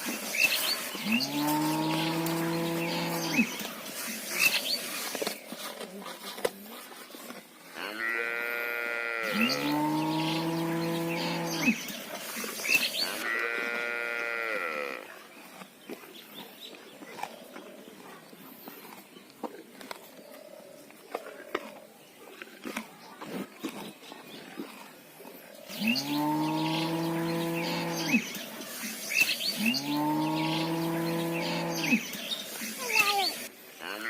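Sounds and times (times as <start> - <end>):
cattle mooing: 7.8 - 11.8, 13.1 - 15.0.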